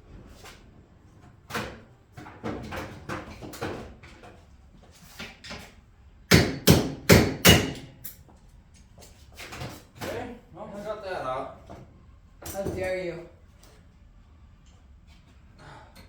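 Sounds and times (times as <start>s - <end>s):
hammer striking metal part: 6.3s - 7.9s.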